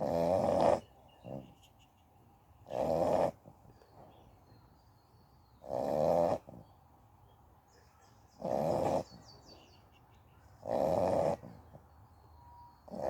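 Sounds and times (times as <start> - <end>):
dog snoring loudly: 0.0 - 1.4, 2.7 - 3.4, 5.6 - 6.6, 8.4 - 9.1, 10.6 - 11.6.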